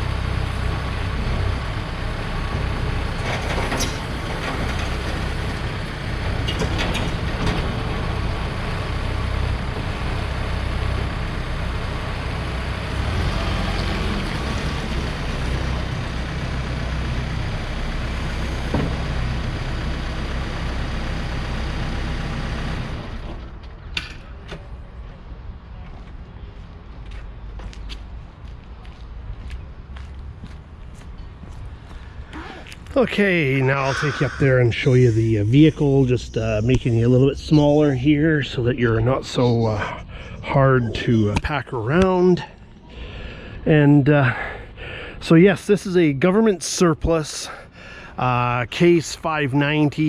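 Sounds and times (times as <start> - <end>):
diesel engine running: 0.0 - 23.5, 31.4 - 45.2
hydraulics working: 1.0 - 10.3, 32.9 - 41.1.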